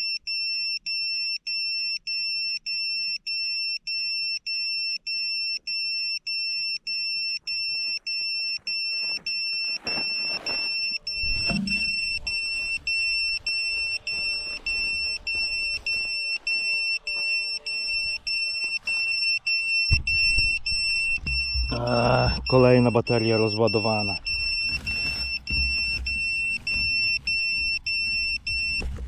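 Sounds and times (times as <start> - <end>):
electronic warning beeper: 0.0 - 29.0
rustling: 7.0 - 23.4, 24.1 - 29.0
handling thumps: 8.7 - 16.4, 17.1 - 22.5, 24.2 - 29.0.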